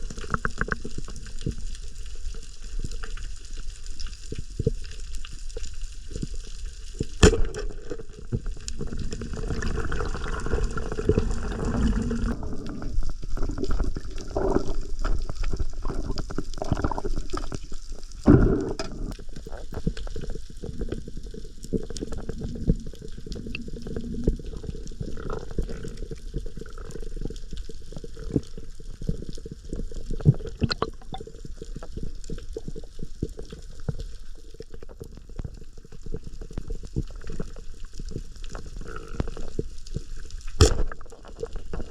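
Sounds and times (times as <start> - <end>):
water sloshing and gurgling: 6.9 - 26.2, 30.1 - 35.2.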